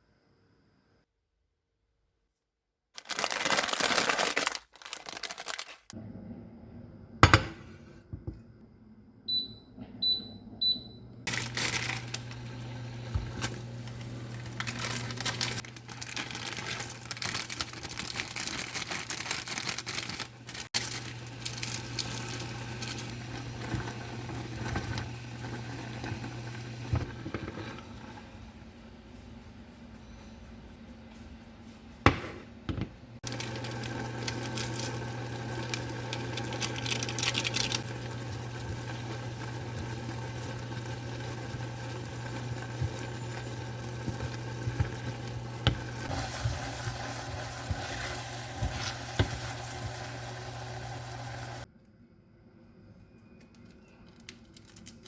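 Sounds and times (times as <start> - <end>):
plastic crinkling: 3.0 - 6.0, 11.3 - 23.8, 33.2 - 38.3, 53.5 - 55.0
appliance low electrical hum: 3.0 - 55.0.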